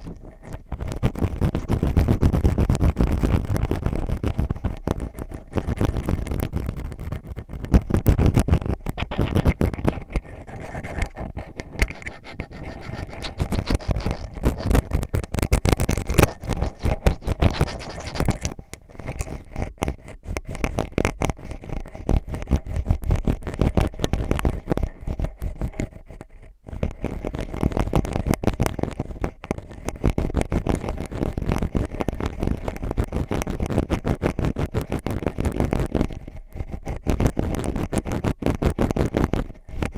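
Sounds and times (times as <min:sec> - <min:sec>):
ear pick scraping: 0:00.0 - 0:27.6.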